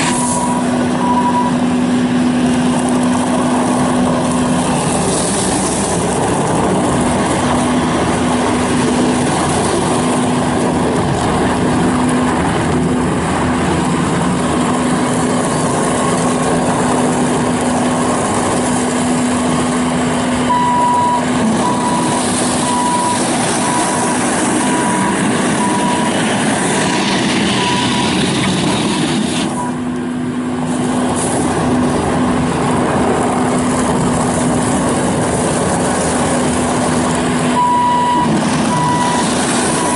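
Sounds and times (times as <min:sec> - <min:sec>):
diesel engine running: 0:00.0 - 0:39.9
backup alarm beeping: 0:00.2 - 0:01.6, 0:20.5 - 0:28.2, 0:37.6 - 0:39.9.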